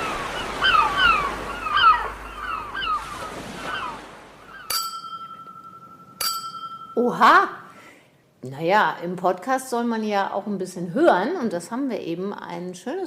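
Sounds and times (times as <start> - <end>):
surf hissing: 0.0 - 4.6
birds calling: 0.0 - 6.9
glasses clinking and ringing: 4.7 - 7.2.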